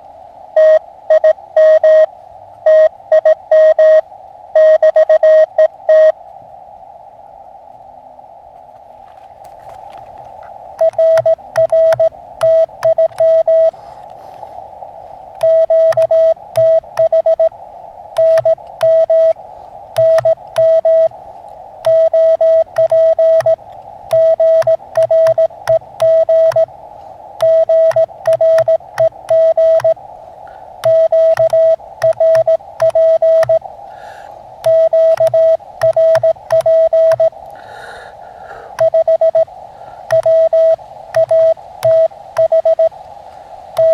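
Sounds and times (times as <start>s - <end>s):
receiver hiss: 0.0s - 43.9s
morse code tone: 0.6s - 4.0s, 4.6s - 6.2s, 10.8s - 13.8s, 15.4s - 17.5s, 18.2s - 19.4s, 20.0s - 21.2s, 21.8s - 26.7s, 27.4s - 30.0s, 30.8s - 33.6s, 34.6s - 37.4s, 38.8s - 39.5s, 40.1s - 43.0s.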